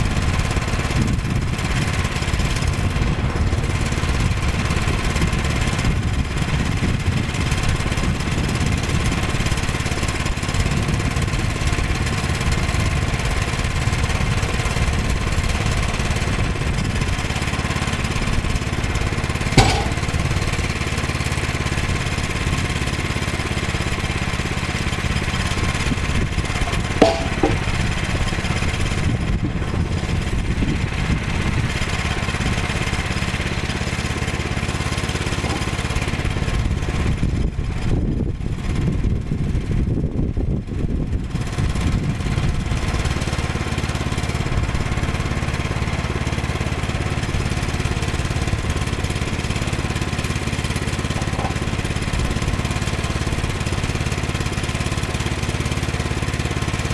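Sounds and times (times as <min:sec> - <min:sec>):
small gasoline engine running: 0:00.0 - 0:27.4, 0:28.2 - 0:56.9
sharp knocks: 0:19.6 - 0:20.7, 0:27.0 - 0:27.8, 0:35.3 - 0:36.0, 0:51.2 - 0:51.8.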